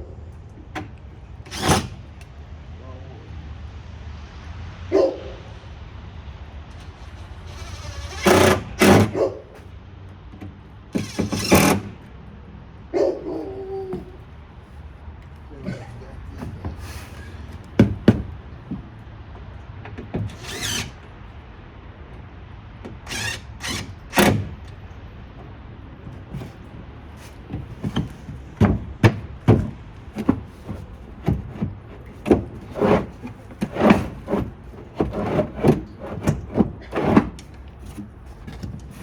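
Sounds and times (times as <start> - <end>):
wooden box knocks and thuds: 17.6 - 18.9, 26.1 - 39.0.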